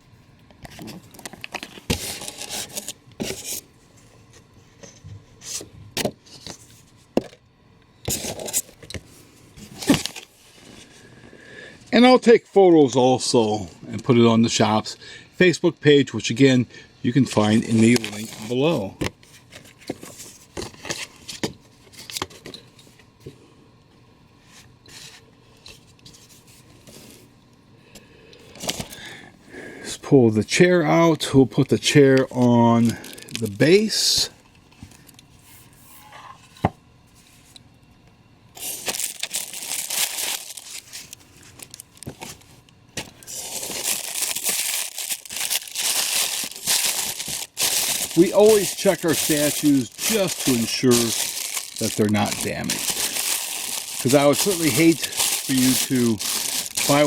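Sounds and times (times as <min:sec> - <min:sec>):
packaging scraping and rubbing: 0:01.6 - 0:03.7, 0:17.7 - 0:18.6, 0:38.6 - 0:42.5, 0:43.2 - 0:57.0.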